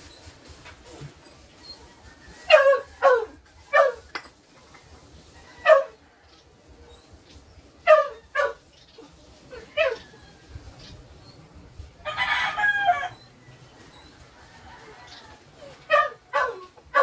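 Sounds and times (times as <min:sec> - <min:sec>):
dog barking: 0:02.5 - 0:04.1, 0:05.6 - 0:06.0, 0:07.8 - 0:08.6, 0:15.9 - 0:17.0.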